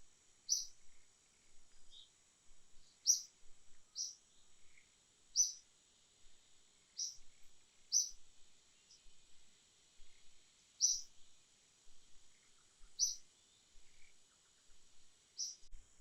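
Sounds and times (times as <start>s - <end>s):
high bird chirps: 0.5s - 0.7s, 5.4s - 5.6s, 7.9s - 8.2s, 10.8s - 11.1s, 13.0s - 13.2s, 15.4s - 15.7s.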